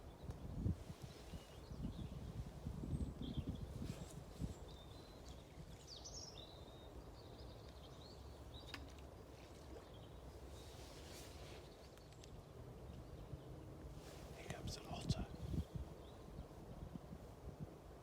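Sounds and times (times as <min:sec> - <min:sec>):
wind buffeting microphone: 0:00.0 - 0:06.5, 0:14.1 - 0:18.0
small birds chirping: 0:00.0 - 0:17.1.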